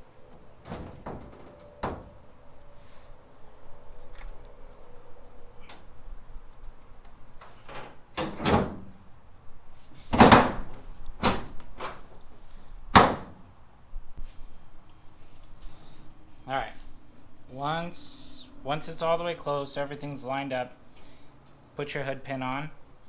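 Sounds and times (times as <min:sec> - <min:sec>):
car hood thuds and clunks: 0:00.6 - 0:02.2, 0:10.1 - 0:12.0, 0:12.9 - 0:13.4.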